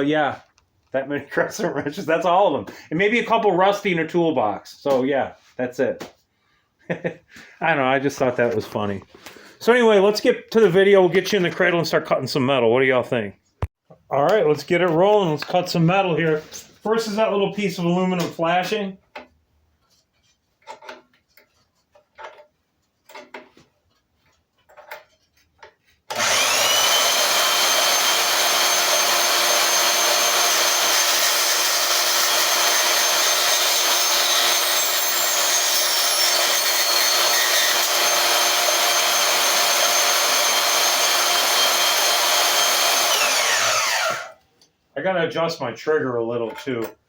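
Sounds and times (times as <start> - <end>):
band saw cutting aluminum: 26.1 - 44.4
band saw whining: 26.1 - 44.4.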